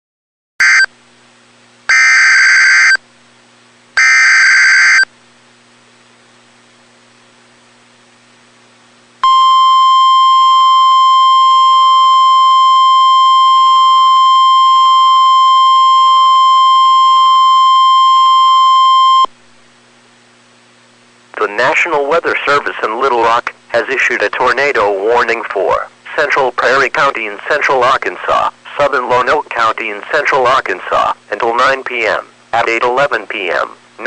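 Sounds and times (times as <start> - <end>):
steady warning alarm tone: 0.6 - 0.9, 1.9 - 3.0, 4.0 - 5.1, 9.2 - 19.3
faint hum: 0.6 - 34.0.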